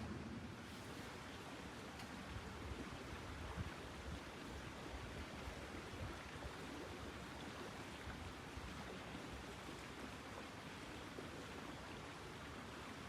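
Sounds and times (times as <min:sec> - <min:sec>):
wind rumble on microphone: 0:02.3 - 0:06.3.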